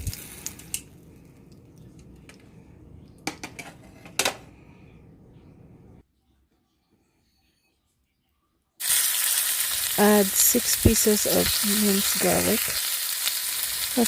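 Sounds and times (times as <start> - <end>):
low hum: 4.3 - 6.0.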